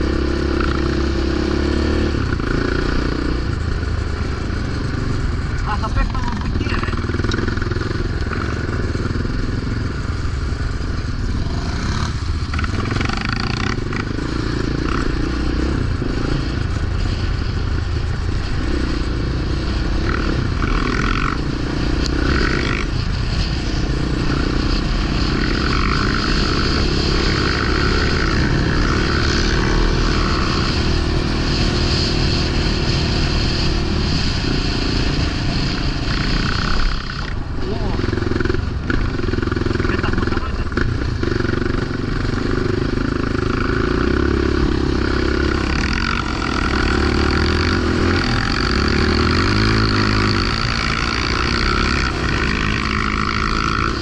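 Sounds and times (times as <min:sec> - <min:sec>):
quad engine revving: 0:00.0 - 0:17.1, 0:18.4 - 0:54.0
clatter and scraping: 0:10.3 - 0:15.2.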